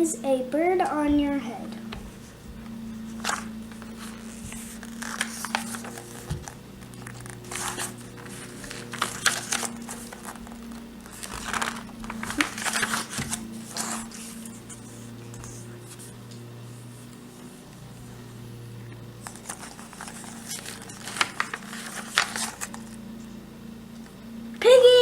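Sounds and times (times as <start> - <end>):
low electrical hum: 0.0 - 25.0
paper rustling and crinkling: 1.9 - 16.2, 19.2 - 23.0.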